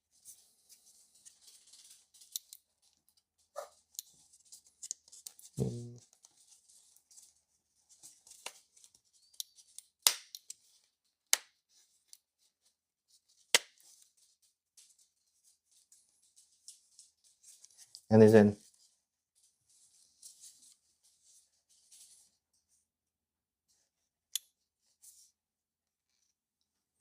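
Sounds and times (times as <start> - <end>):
plastic scraping and rustling: 0.2 - 9.8.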